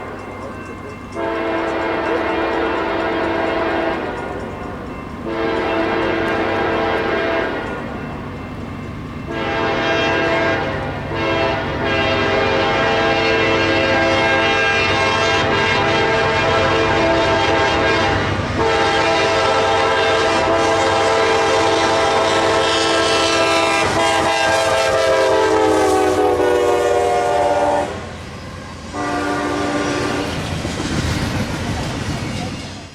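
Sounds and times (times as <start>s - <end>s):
train running noise: 0.0s - 32.9s
locomotive air horn blasts: 1.2s - 4.3s, 5.2s - 7.8s, 9.3s - 28.1s, 28.9s - 30.3s.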